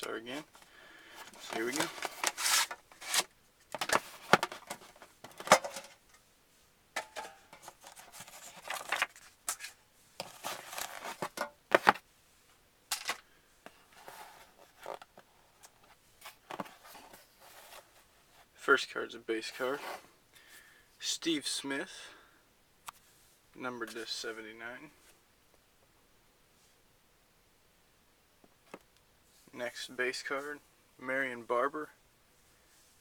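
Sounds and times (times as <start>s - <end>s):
packaging rustling: 0.0s - 6.0s, 7.0s - 12.0s
cardboard box being opened: 1.4s - 4.8s.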